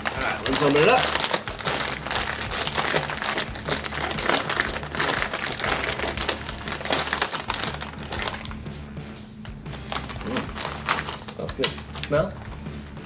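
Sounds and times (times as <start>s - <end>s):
foil chip bag crinkling: 0.0s - 8.6s, 9.7s - 13.0s.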